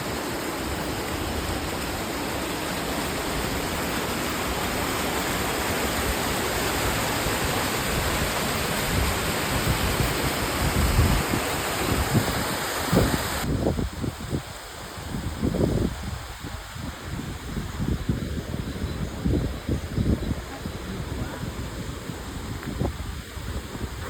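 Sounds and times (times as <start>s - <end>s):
waterfall rushing: 0.0s - 13.8s.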